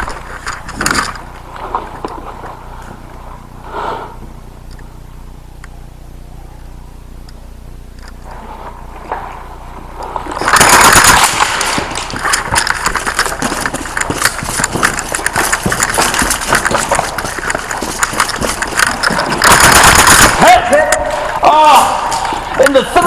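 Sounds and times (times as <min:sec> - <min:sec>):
airsoft gun whirring burst: 0:10.3 - 0:21.4
rapid airsoft shots and impacts: 0:10.4 - 0:21.4.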